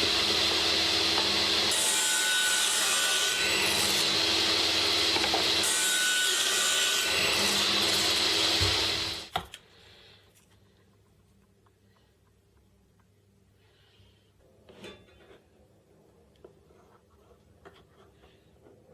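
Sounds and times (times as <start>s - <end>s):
power tool humming: 0.0s - 9.3s.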